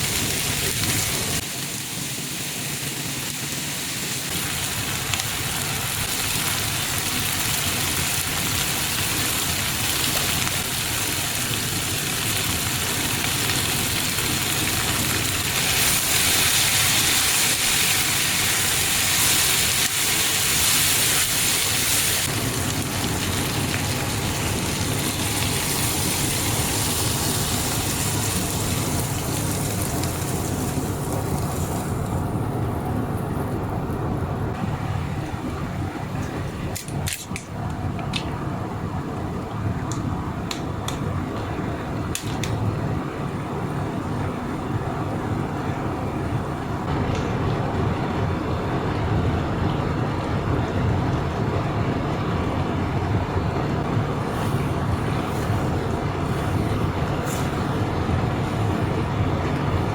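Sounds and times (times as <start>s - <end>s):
food sizzling in a pan: 0.0s - 32.0s.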